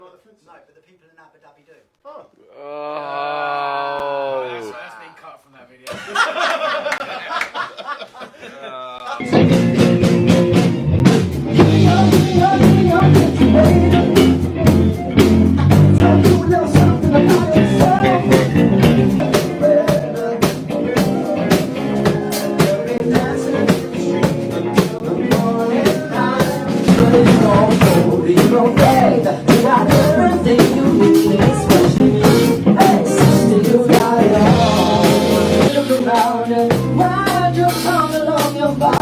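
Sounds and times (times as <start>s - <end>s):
rock music with singing: 9.2s - 39.0s.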